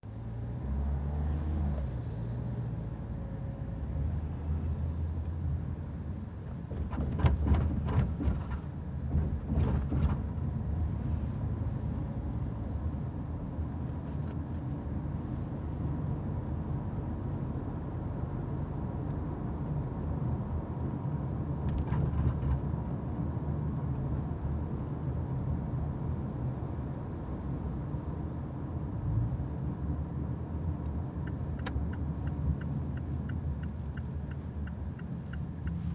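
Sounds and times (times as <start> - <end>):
car road noise on rough road: 0.0 - 35.9
knocks and rattles: 6.8 - 10.3.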